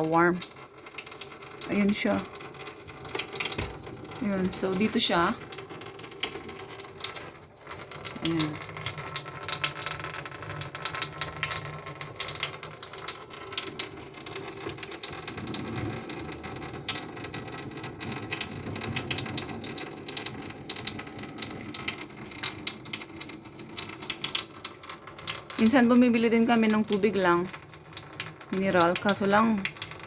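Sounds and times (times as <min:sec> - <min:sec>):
water sloshing and splashing: 0:00.0 - 0:30.0.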